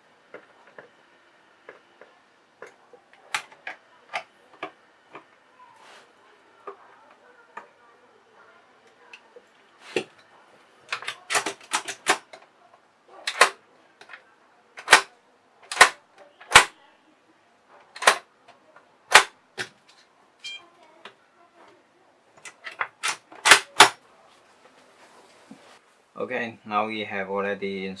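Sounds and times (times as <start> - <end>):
door lock hardware clicks and knocks: 10.9 - 12.4, 18.0 - 18.2.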